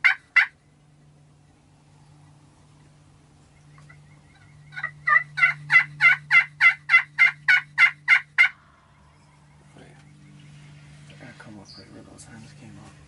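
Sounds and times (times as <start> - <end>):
turkey yelping: 0.0 - 0.6, 3.5 - 9.7.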